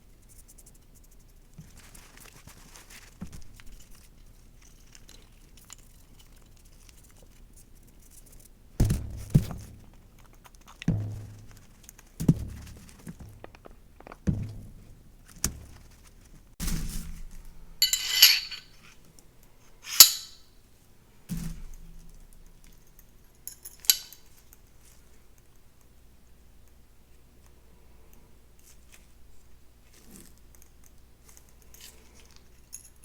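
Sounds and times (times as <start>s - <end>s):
dull knocks of metal parts: 8.8s - 10.1s, 10.9s - 16.0s, 16.6s - 18.7s, 20.0s - 20.4s, 23.5s - 24.2s
metal clinks: 17.8s - 18.8s, 19.9s - 20.4s, 21.7s - 24.4s
metallic scrape: 17.8s - 18.8s, 19.9s - 20.4s.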